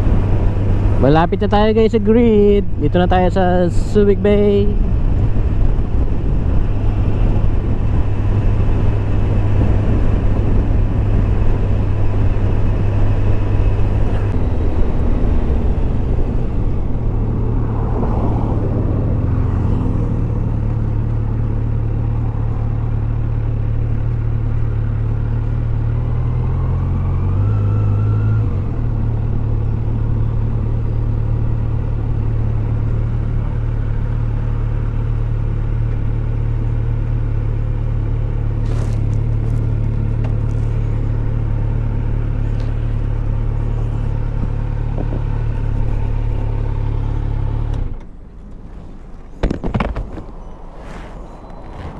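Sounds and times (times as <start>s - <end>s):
motorcycle engine running: 28.7s - 50.6s.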